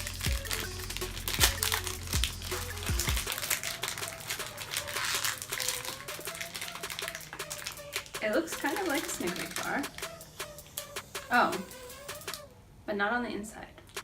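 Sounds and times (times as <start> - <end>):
candy wrapper crinkling: 0.0 - 10.9
background music with low beat: 0.0 - 12.5.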